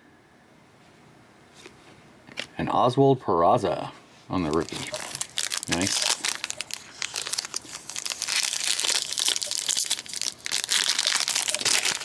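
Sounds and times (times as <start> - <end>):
foil wrapper crinkling: 4.4 - 12.0.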